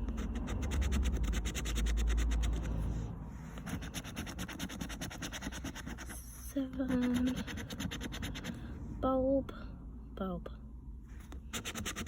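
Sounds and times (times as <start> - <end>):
scratchcard coating being scratched: 0.0 - 2.9, 3.5 - 8.6, 11.4 - 12.0
low rumble: 0.0 - 3.7.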